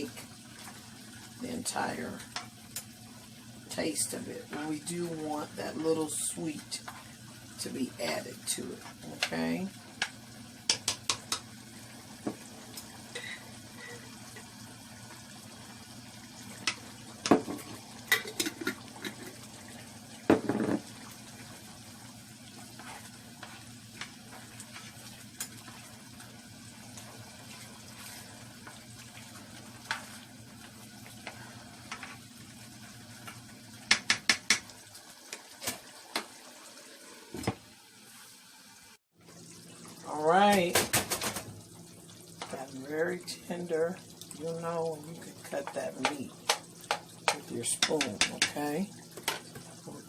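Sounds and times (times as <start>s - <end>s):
food sizzling in a pot: 0.0s - 50.0s
spoon clacking against pot: 46.0s - 48.6s.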